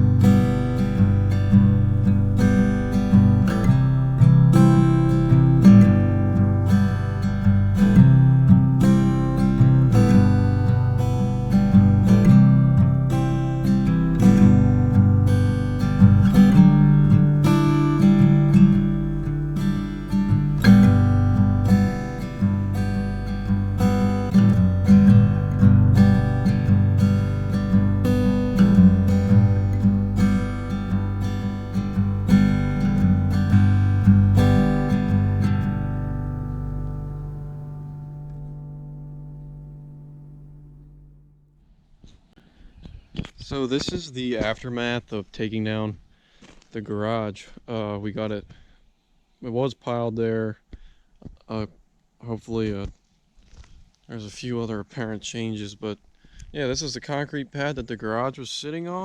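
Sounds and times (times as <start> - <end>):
acoustic guitar strumming: 0.0 - 41.5.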